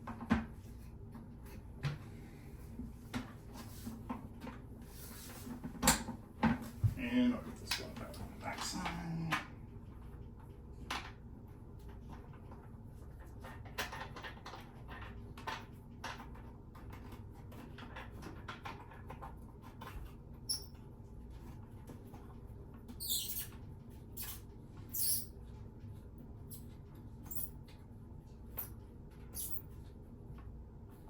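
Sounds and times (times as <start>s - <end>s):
short high squeak: 23.0s - 23.5s, 24.2s - 25.3s, 29.4s - 29.6s
plastic parts clicking and squeaking: 23.0s - 23.6s.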